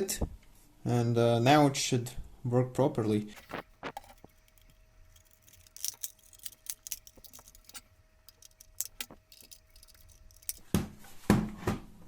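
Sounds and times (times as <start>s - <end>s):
plastic parts clicking: 3.4s - 10.7s.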